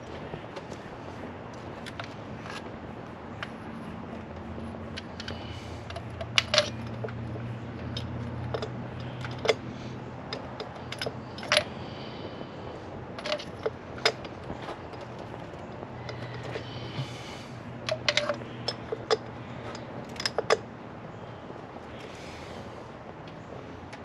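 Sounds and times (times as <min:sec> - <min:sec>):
steady low hum: 0:00.0 - 0:24.0
metal hand tools clinking: 0:05.0 - 0:07.2, 0:07.8 - 0:09.6, 0:10.3 - 0:11.7, 0:13.2 - 0:15.1, 0:16.0 - 0:17.0, 0:17.9 - 0:20.6.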